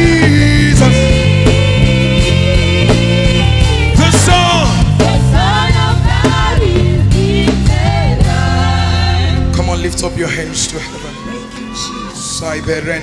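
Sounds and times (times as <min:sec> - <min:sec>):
gospel band playing: 0:00.0 - 0:13.0.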